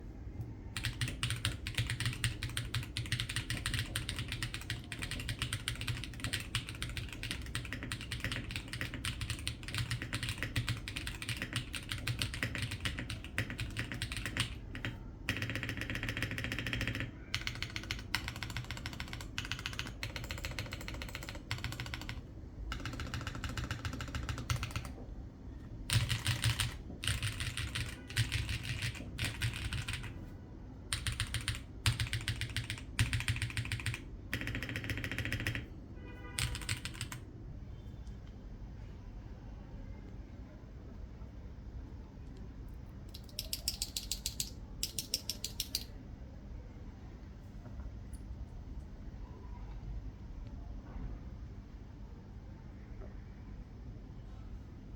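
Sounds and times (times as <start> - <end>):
low background hum: 0.0 - 54.9
mechanical keyboard typing: 0.8 - 25.1, 25.8 - 30.3, 30.9 - 37.2, 43.0 - 46.0.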